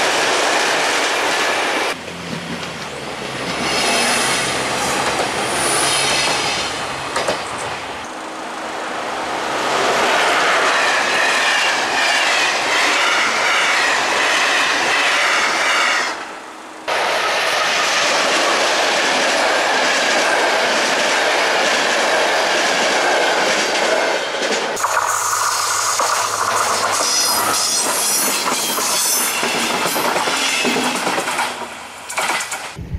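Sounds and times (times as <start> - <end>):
train wheels clattering: 0.0 - 7.8, 17.0 - 32.8
high wheel squeal: 3.0 - 8.3, 10.2 - 16.2, 24.8 - 29.8.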